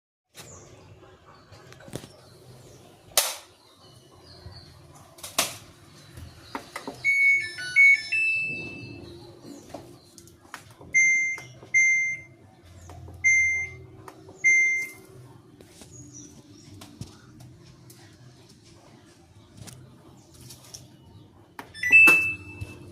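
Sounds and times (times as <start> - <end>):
button beeps: 13.2 - 13.8, 14.4 - 15.0, 21.8 - 22.8.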